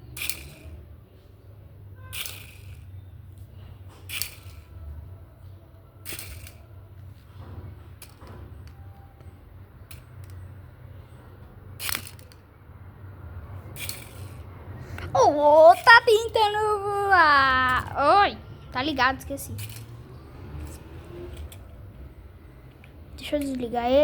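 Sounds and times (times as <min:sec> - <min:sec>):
toy helicopter clicks: 0:00.1 - 0:00.8, 0:02.2 - 0:02.9, 0:04.1 - 0:04.8, 0:06.0 - 0:06.6, 0:11.8 - 0:12.5, 0:13.8 - 0:14.4, 0:19.4 - 0:19.9.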